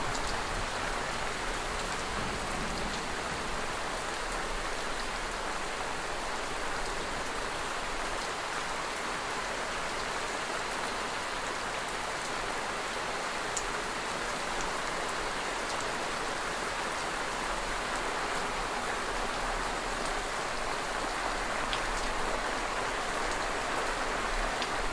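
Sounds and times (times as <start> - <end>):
steady rain hiss: 0.0 - 24.9
faint raindrop ticks: 24.3 - 24.9.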